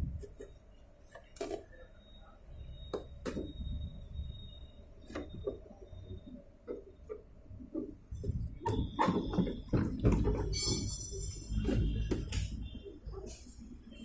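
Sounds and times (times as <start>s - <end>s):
washing machine spin rumble: 2.8s - 13.2s
washing machine tub knocking: 8.2s - 11.0s.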